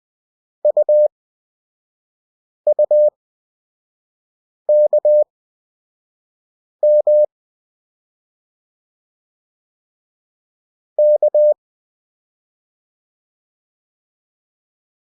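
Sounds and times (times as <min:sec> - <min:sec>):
morse code beeps: 0:00.7 - 0:01.1, 0:02.7 - 0:03.1, 0:04.7 - 0:05.3, 0:06.8 - 0:07.3, 0:11.0 - 0:11.6.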